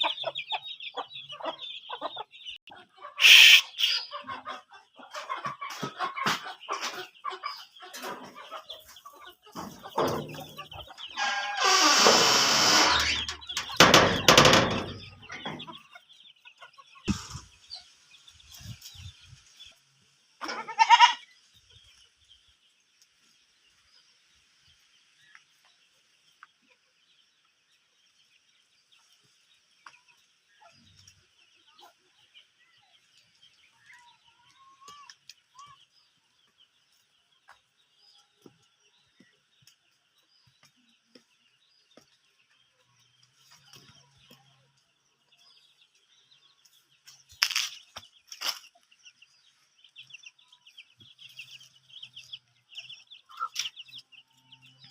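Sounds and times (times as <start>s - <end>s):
chickens clucking: 0.0s - 54.9s
goat bleating: 20.4s - 21.2s.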